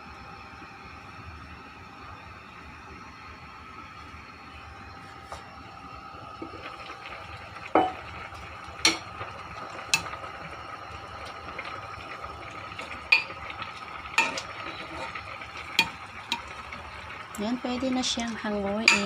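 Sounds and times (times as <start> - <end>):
metal utensil clinking on pot: 8.9 - 9.1, 14.2 - 15.1, 15.8 - 16.6, 18.8 - 19.0.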